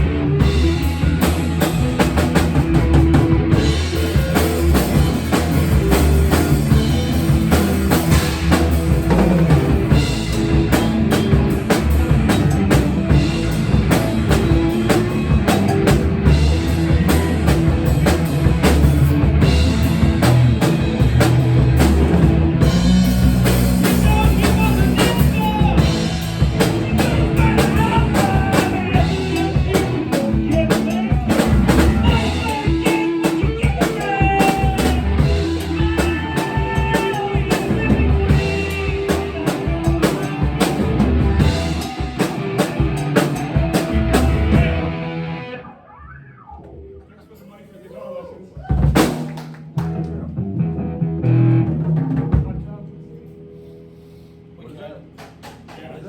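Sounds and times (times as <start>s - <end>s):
live rock band playing: 0.0s - 47.0s, 48.8s - 54.3s.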